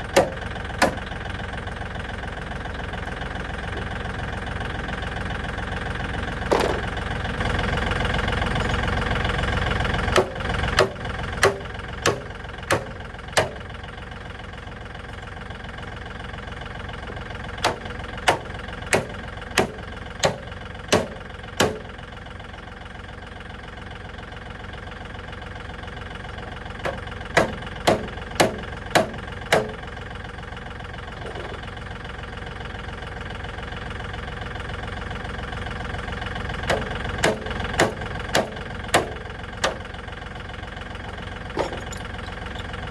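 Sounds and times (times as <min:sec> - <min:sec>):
tractor engine running: 0:00.0 - 0:42.9
sharp knocks: 0:00.2 - 0:01.0, 0:10.2 - 0:13.6, 0:26.8 - 0:29.8.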